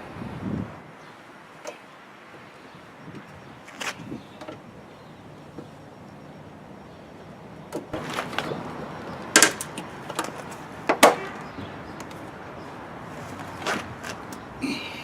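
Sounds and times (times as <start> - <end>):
plastic parts clicking and knocking: 9.3 - 11.2.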